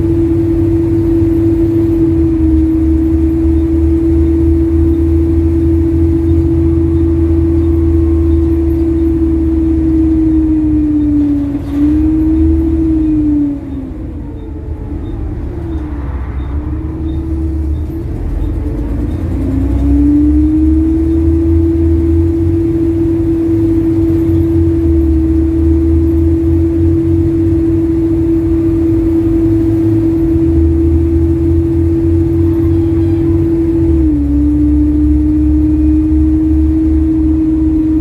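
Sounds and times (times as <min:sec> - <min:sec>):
bus engine rumbling: 0:00.0 - 0:38.0
engine ticking: 0:00.0 - 0:38.0.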